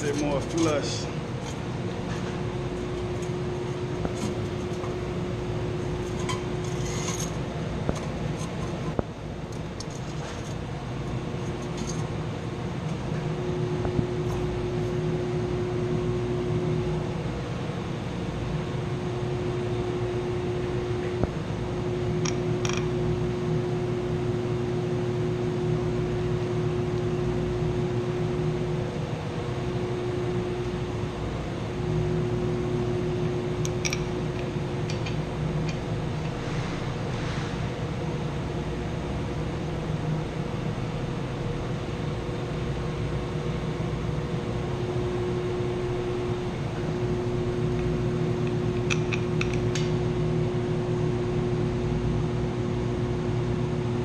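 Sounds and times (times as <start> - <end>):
machinery humming: 0.0 - 54.0.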